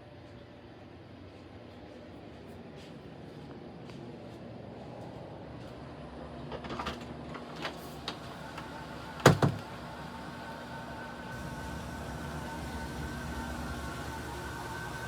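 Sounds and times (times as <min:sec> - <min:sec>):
steady mechanical hum: 0:00.0 - 0:15.0
door shutting with a thud: 0:09.2 - 0:09.7.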